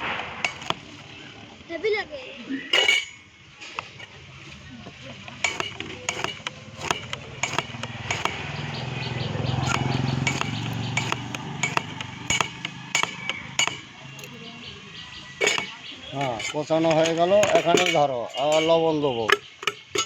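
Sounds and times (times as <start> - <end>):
low engine hum: 5.0 - 15.4.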